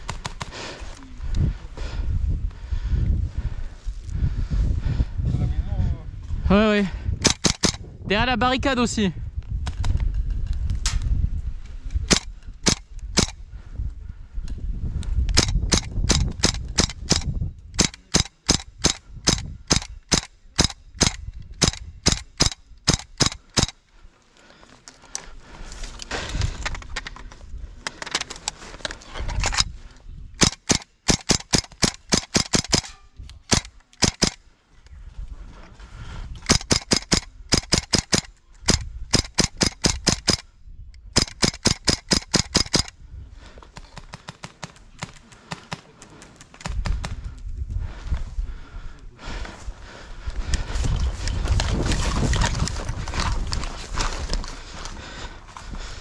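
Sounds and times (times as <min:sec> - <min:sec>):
airsoft guns firing sharp pops: 0:00.0 - 0:00.5, 0:07.2 - 0:07.8, 0:30.4 - 0:34.4, 0:36.4 - 0:40.4, 0:43.7 - 0:47.2.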